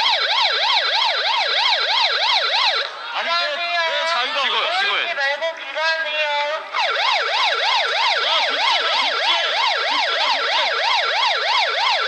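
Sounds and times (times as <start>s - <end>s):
police siren yelping: 0.0s - 3.1s, 6.7s - 12.0s.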